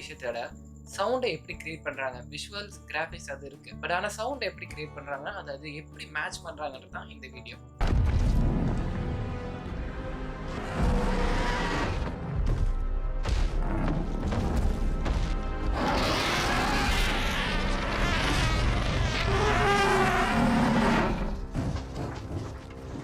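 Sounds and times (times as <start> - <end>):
dramatic orchestral score: 7.8 - 23.0
creature screeching and growling: 15.8 - 21.4.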